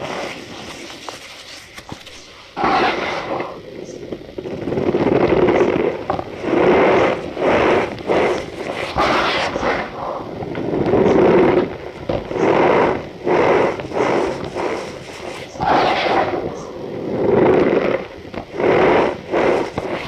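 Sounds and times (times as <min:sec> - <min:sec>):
cornstarch squeaking and crunching: 0:00.0 - 0:03.6.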